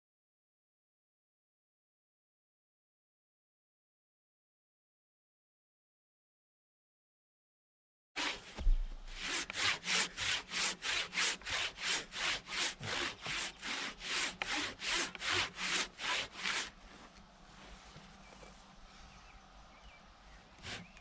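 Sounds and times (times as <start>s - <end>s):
handsaw rasping through log: 8.2s - 16.8s, 20.6s - 21.0s.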